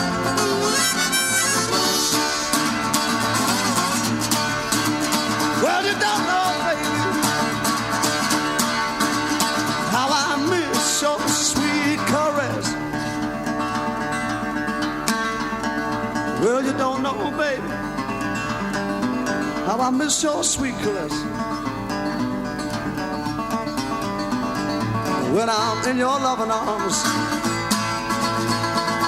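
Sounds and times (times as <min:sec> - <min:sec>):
harmonica with sliding notes: 0:00.0 - 0:05.6
acoustic guitar: 0:00.0 - 0:29.0.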